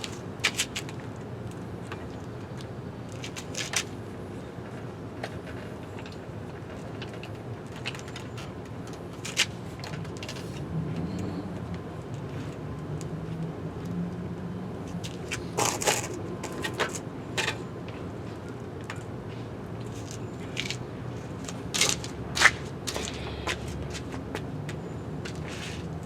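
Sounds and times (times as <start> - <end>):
knocks and scrapes of bike stand: 15.1 - 17.6.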